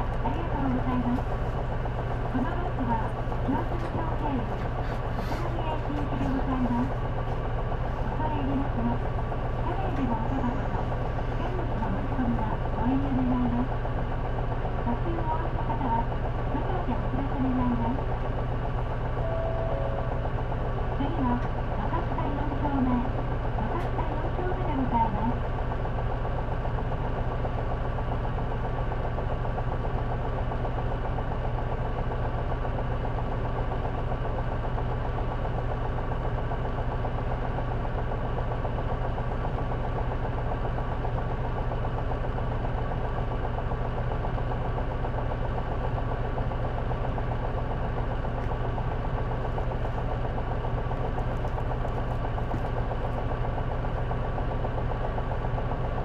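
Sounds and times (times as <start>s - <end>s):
bus diesel engine idling: 0.0s - 56.0s
thin steady whine: 19.2s - 21.4s.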